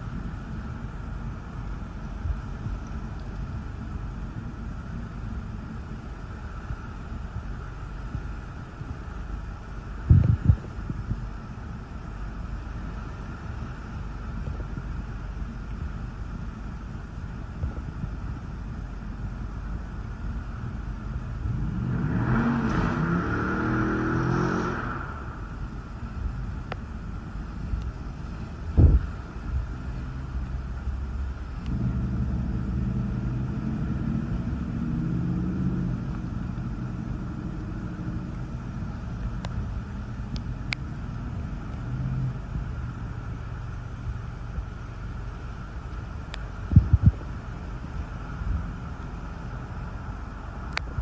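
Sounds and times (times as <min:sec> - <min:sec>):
wind buffeting microphone: 0:10.0 - 0:11.6, 0:27.6 - 0:29.9, 0:46.5 - 0:48.9
car driving past: 0:21.7 - 0:25.6.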